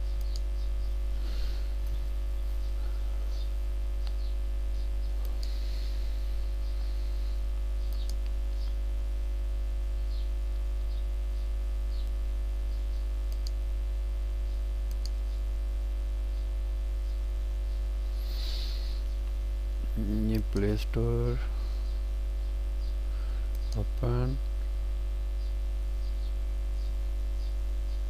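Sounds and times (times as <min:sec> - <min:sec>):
electrical hum: 0:00.0 - 0:28.0
faint clicks: 0:05.2 - 0:05.6, 0:13.3 - 0:13.6, 0:14.9 - 0:15.4.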